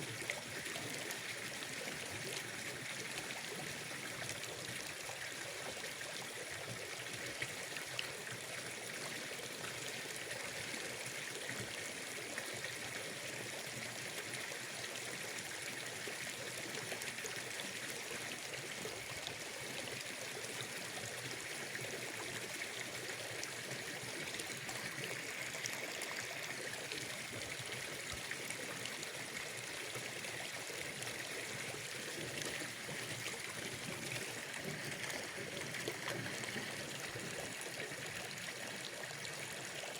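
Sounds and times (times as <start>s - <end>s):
water trickling: 14.6s - 39.9s.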